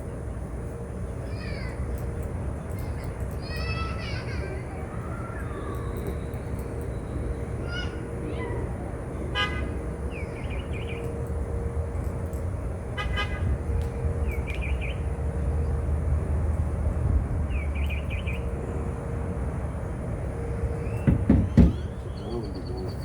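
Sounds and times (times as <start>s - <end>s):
small bird chirping: 17.5s - 18.5s, 20.8s - 23.0s
low knocks: 21.0s - 21.9s.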